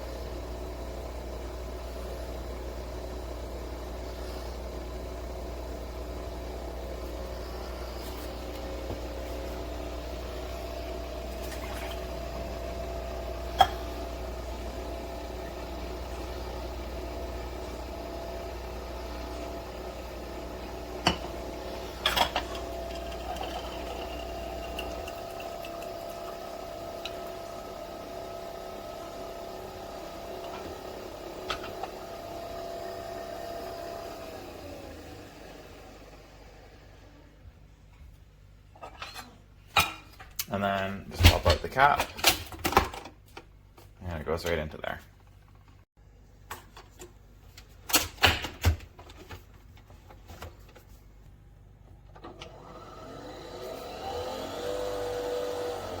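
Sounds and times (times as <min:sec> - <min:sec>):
coffee machine motor and pump hum: 0:00.0 - 0:38.1, 0:51.8 - 0:56.0.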